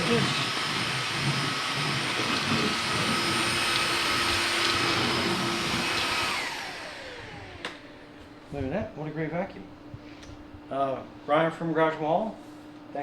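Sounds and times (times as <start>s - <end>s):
vacuum motor whining: 0.0s - 8.3s.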